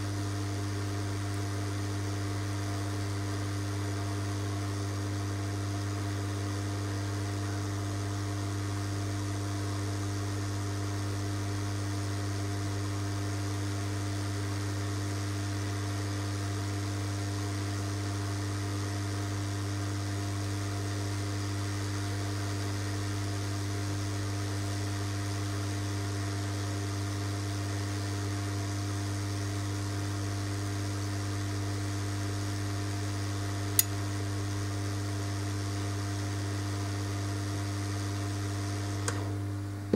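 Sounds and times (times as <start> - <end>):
steady electrical hum: 0.0 - 39.9
sharp click: 33.8 - 34.0.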